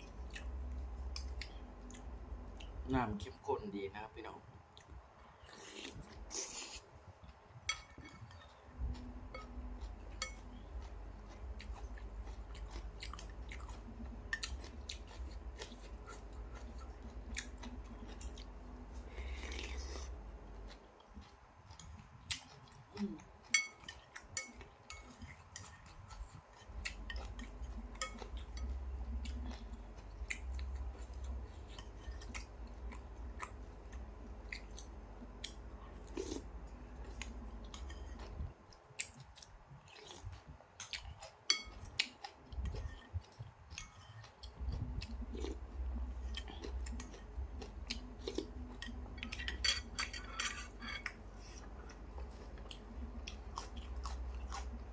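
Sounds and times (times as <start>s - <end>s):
chewing: 4.7s - 54.9s
spoon clinking against bowl: 7.7s - 8.5s, 23.5s - 25.3s, 41.5s - 41.8s.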